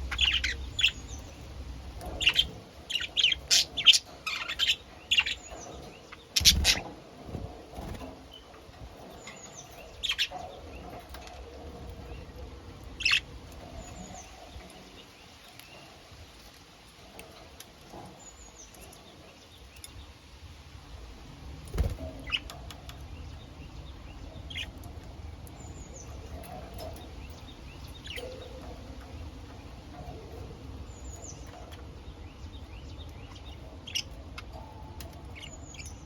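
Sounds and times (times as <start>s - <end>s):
budgerigars chirping: 0.0s - 1.4s, 2.0s - 6.9s, 13.0s - 13.3s.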